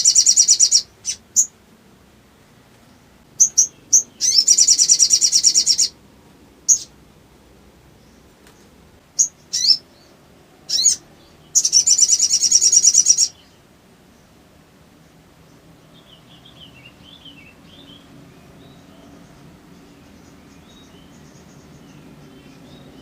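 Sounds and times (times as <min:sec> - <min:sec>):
bird chirping and rattling: 0:00.0 - 0:01.5, 0:03.4 - 0:05.9, 0:10.7 - 0:13.3
soft bird twittering: 0:00.0 - 0:01.5, 0:02.9 - 0:06.0, 0:06.7 - 0:07.0, 0:08.0 - 0:14.4, 0:15.0 - 0:23.0.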